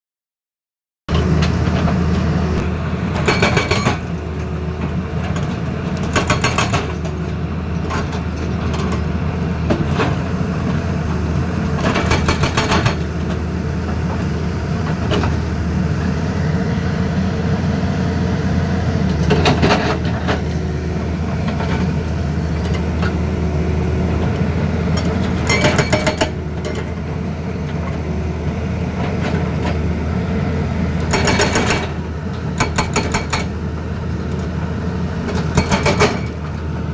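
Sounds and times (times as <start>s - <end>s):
excavator diesel engine running: 1.1s - 36.9s.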